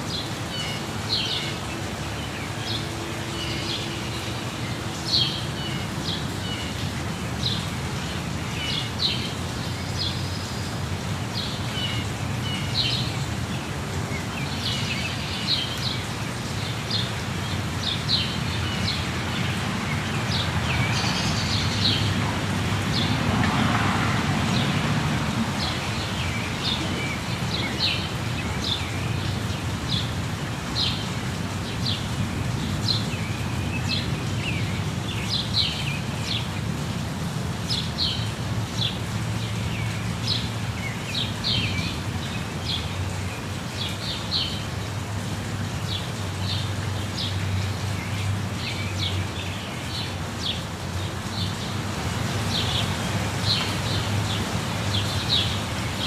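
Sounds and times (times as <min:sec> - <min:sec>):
waterfall rushing: 0:00.0 - 0:56.0
birds chirping: 0:11.4 - 0:36.6, 0:45.8 - 0:56.0.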